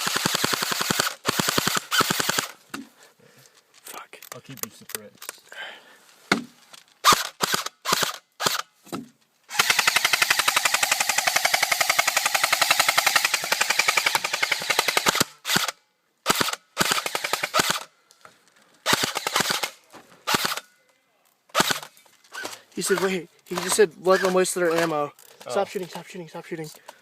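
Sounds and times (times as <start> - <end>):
airsoft guns firing: 0.0 - 2.6, 7.0 - 8.6, 9.5 - 17.9, 18.8 - 20.6, 21.5 - 25.0.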